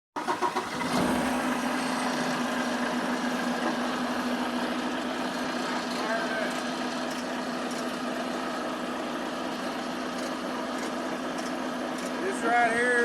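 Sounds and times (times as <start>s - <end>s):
diesel engine idling: 0.2s - 13.0s.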